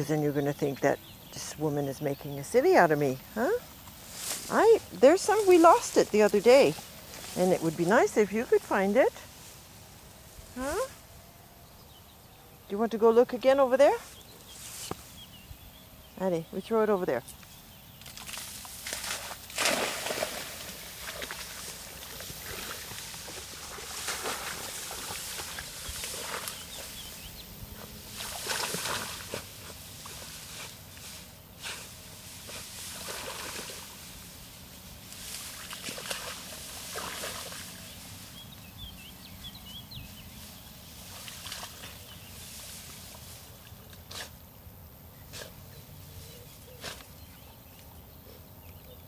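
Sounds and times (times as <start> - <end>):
dog splashing through water: 18.1 - 27.0, 28.1 - 30.4, 35.2 - 38.0.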